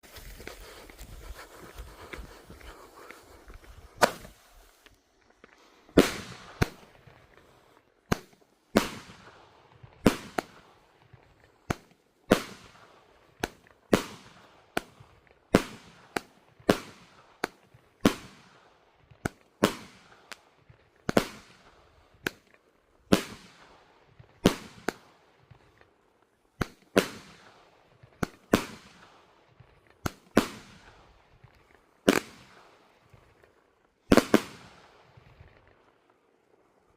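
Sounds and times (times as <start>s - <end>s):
firework cake firing sharp bangs: 3.9s - 4.4s, 5.9s - 7.0s, 8.1s - 10.9s, 11.7s - 20.4s, 21.1s - 22.5s, 23.1s - 25.6s, 26.6s - 29.4s, 30.0s - 31.1s, 32.1s - 32.8s, 34.1s - 35.6s.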